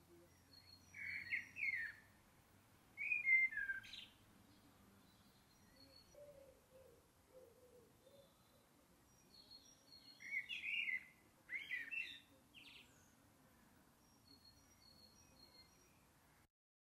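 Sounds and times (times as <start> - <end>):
birds chirping: 0.2 - 2.2, 2.9 - 13.2.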